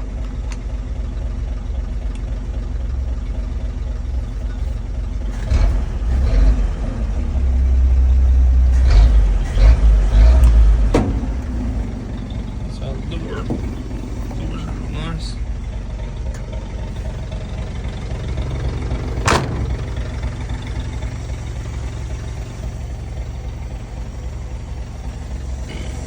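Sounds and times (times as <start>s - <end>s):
truck engine running: 0.0s - 26.0s
short knocks: 10.3s - 15.0s.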